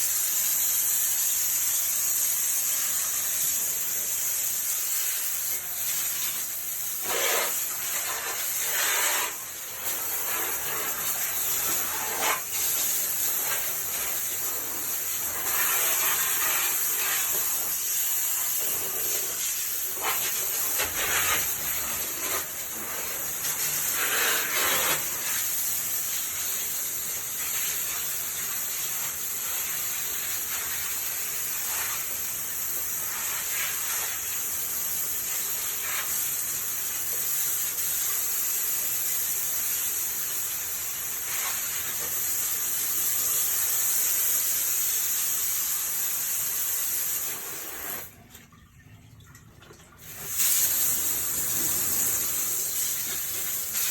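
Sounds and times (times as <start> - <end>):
hose spraying water: 0.0 - 48.2, 50.0 - 53.9
water splashing into drain: 47.4 - 53.9.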